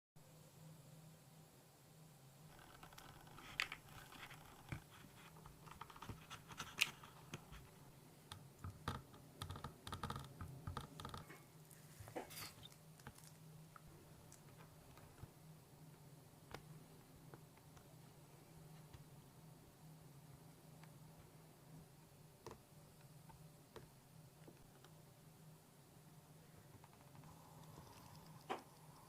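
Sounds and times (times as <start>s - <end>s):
low steady hum: 0.2s - 29.0s
small objects tapping and scraping: 2.5s - 7.7s, 9.4s - 15.3s, 26.7s - 29.0s.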